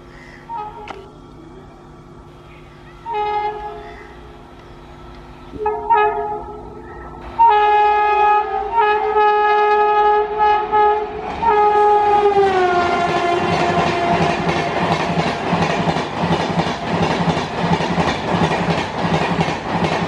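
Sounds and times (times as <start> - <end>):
train wheel and track noise: 0.0 - 20.0
locomotive horn blasts: 0.5 - 1.1, 2.8 - 4.5, 5.4 - 14.9.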